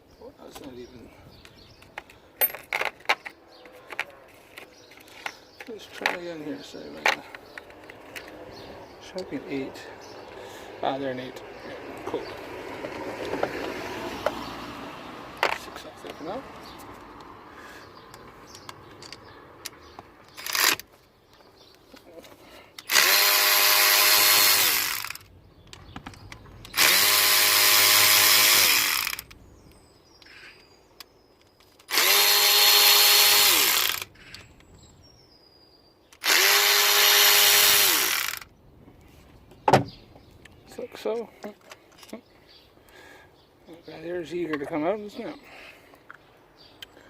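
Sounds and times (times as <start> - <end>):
drill-driver motor whine: 22.9 - 25.3, 26.7 - 29.3, 31.9 - 34.1, 36.2 - 38.4.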